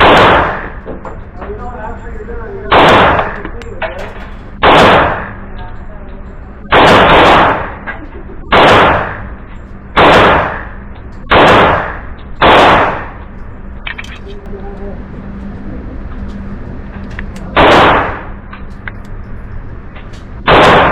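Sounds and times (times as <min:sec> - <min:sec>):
pistol shots with echo: 0:00.0 - 0:01.0, 0:02.7 - 0:03.6, 0:04.6 - 0:05.4, 0:06.7 - 0:07.9, 0:08.5 - 0:09.4, 0:10.0 - 0:13.2, 0:17.5 - 0:18.4, 0:20.4 - 0:20.9.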